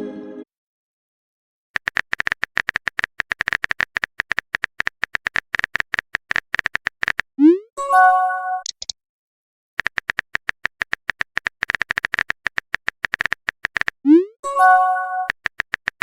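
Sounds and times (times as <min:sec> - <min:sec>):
phone keyboard typing clicks: 0:01.8 - 0:07.3, 0:08.6 - 0:08.9, 0:09.8 - 0:14.0, 0:15.2 - 0:16.0
multi-tone notification chime: 0:07.8 - 0:08.6, 0:14.4 - 0:15.3.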